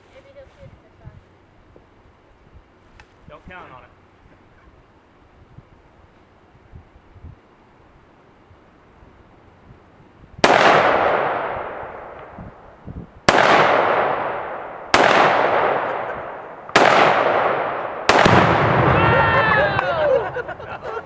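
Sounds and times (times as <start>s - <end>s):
rifle shots with echo: 10.4s - 12.4s, 13.3s - 19.1s.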